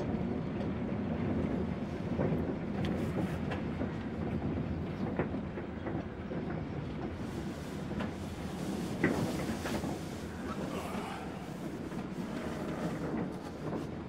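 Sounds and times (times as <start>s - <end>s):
strong wind rumbling: 0.1s - 14.0s.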